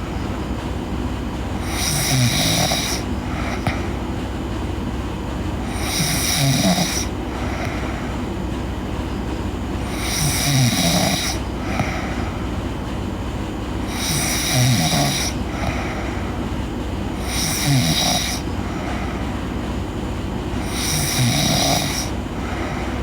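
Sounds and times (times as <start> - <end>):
steady low hum: 0.0 - 23.0
girl snoring: 1.6 - 3.9, 5.7 - 8.0, 9.9 - 12.3, 13.9 - 16.0, 17.2 - 18.5, 20.6 - 22.9.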